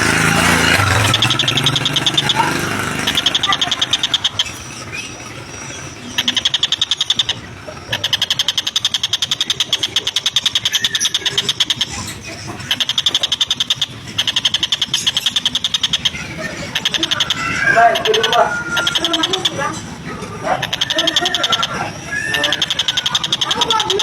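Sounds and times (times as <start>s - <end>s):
bird harsh chattering call: 0.0s - 24.0s.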